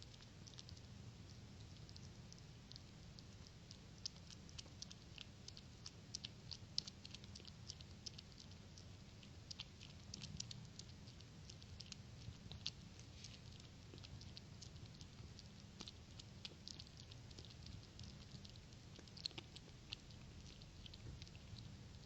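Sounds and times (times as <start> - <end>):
low steady hum: 0.0 - 22.0
small clicks and ticks: 0.0 - 22.0.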